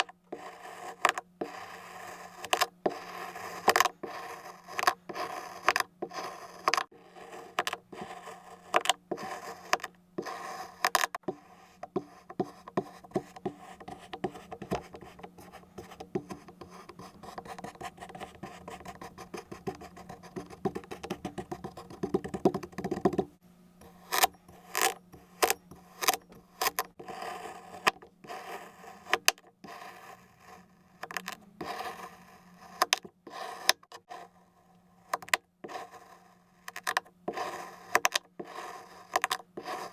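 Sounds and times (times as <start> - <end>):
blade cutting through sand: 0.0 - 13.0, 37.3 - 39.9.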